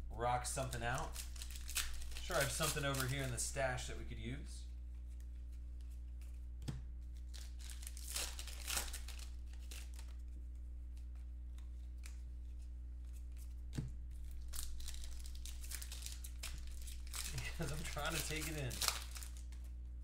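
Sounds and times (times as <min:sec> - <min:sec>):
low electrical hum: 0:00.0 - 0:20.0
foil wrapper tearing and crinkling: 0:00.8 - 0:03.4, 0:07.3 - 0:10.2, 0:14.2 - 0:19.5.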